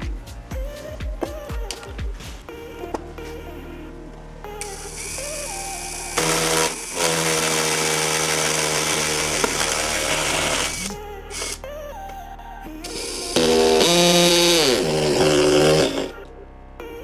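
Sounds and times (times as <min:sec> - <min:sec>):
electric power tool whine: 0:04.6 - 0:11.6, 0:12.8 - 0:16.2.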